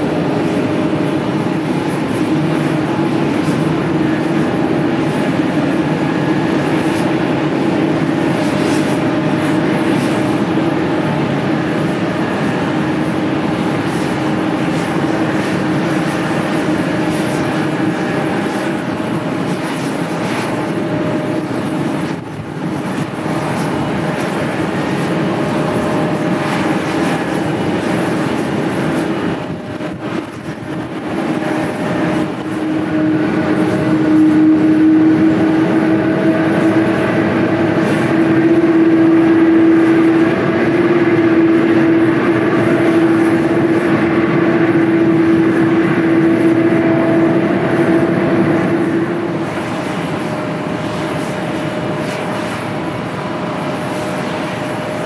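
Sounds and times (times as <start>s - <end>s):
jet airliner engines running: 0.0s - 55.0s
rushing rumble: 0.0s - 55.0s
steady hum: 0.0s - 55.0s.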